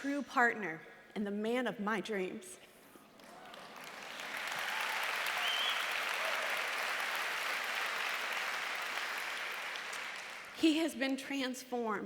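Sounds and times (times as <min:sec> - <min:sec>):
audience applauding: 0:03.2 - 0:10.6.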